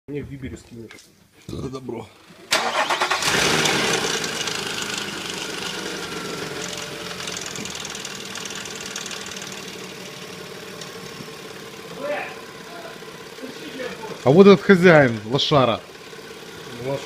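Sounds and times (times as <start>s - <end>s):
car engine idling: 2.2s - 17.0s
engine knocking: 6.7s - 10.1s.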